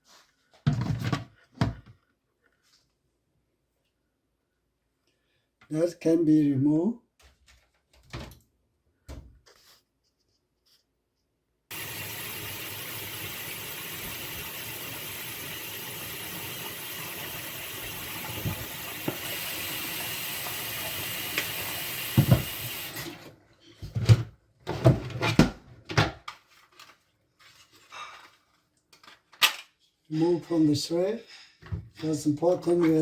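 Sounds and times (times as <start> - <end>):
steady hissing: 11.7 - 21.6.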